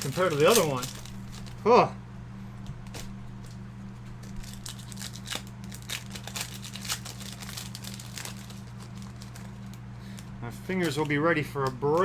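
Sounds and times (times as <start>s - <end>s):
foil wrappers crinkling: 0.0s - 1.7s, 2.6s - 12.0s
steady low hum: 0.0s - 12.0s.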